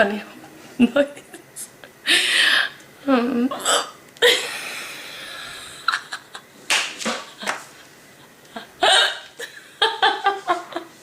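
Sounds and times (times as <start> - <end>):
woman hiccuping: 3.5 - 4.3, 8.8 - 9.3
stifled snickering laughter: 8.5 - 11.0.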